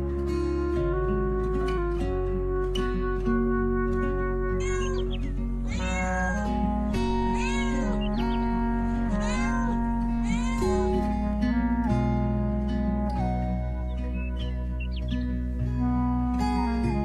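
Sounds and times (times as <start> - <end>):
background music with held notes: 0.0 - 17.0
kitten meowing: 4.6 - 8.5, 9.1 - 11.0.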